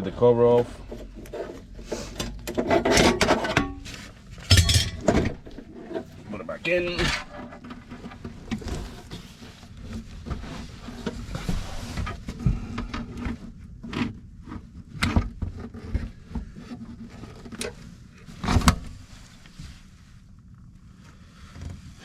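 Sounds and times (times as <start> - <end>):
metal parts clicking and rattling: 4.5 - 5.2.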